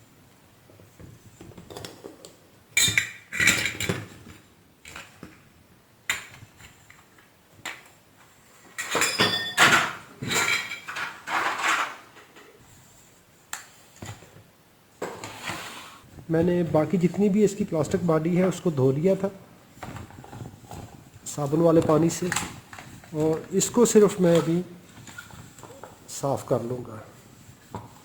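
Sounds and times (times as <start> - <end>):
hard parts clattering and knocking: 1.3 - 5.2, 8.7 - 12.6.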